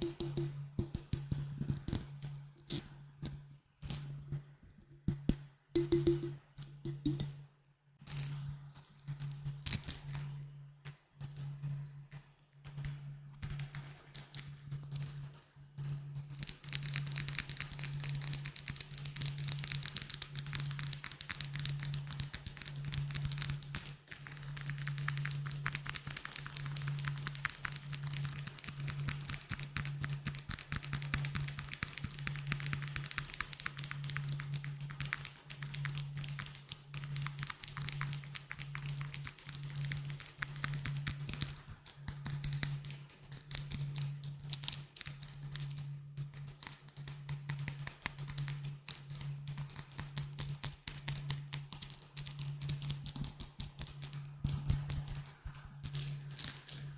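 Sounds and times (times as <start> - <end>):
glass bottles being tapped: 5.8 - 7.3.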